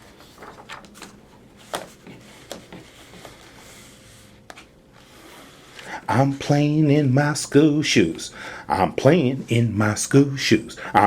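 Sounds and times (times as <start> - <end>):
book pages rustling: 0.0 - 5.9.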